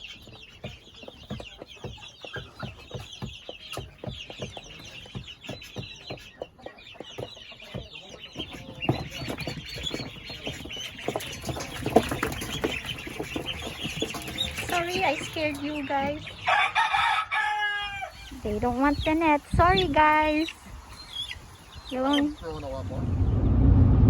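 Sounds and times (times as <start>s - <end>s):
chickens clucking and squawking: 0.0s - 22.9s
birds chirping: 0.0s - 23.5s
wings flapping: 8.4s - 16.4s.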